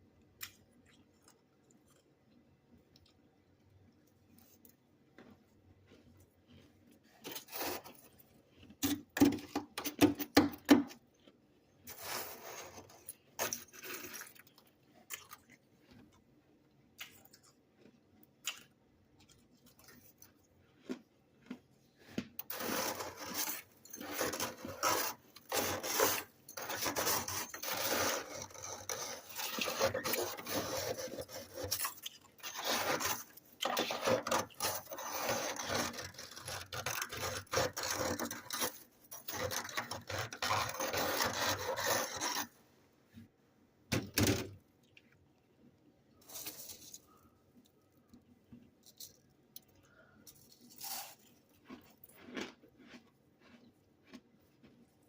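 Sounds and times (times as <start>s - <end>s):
freezer frost being scraped: 7.0s - 10.8s, 11.9s - 14.3s, 22.4s - 42.6s, 46.2s - 47.0s.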